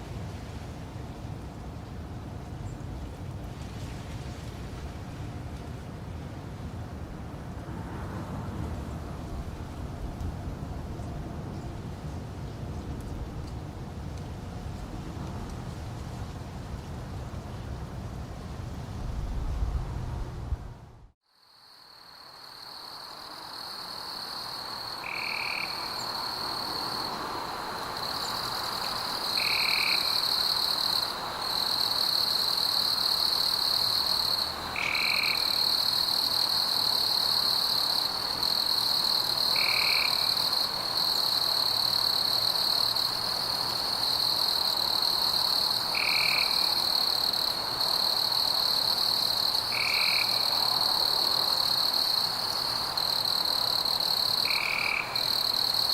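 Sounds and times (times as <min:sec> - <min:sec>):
frog chorus: 0:24.3 - 0:27.0, 0:27.6 - 0:43.1, 0:44.0 - 0:55.9.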